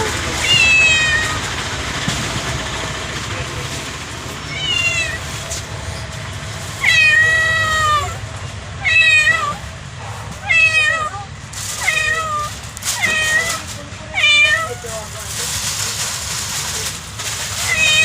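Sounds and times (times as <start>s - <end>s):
cat meowing: 0.4s - 1.5s, 4.5s - 5.4s, 6.8s - 9.7s, 10.4s - 14.9s, 17.6s - 18.0s.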